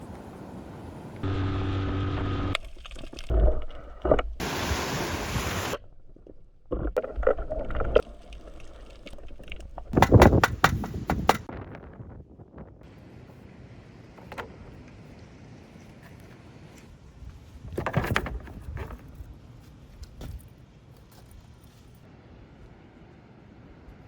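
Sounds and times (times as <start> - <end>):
steady hum: 1.2 - 8.0
wind noise: 2.5 - 13.4
rushing water: 2.6 - 10.0.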